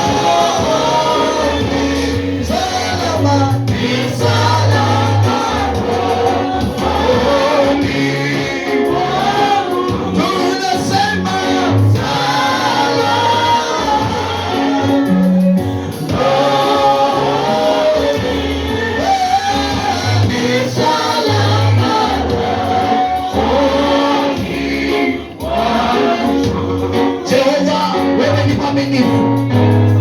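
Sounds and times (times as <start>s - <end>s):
band playing: 0.0s - 30.0s
bass line: 0.0s - 30.0s
choir singing gospel: 0.0s - 30.0s.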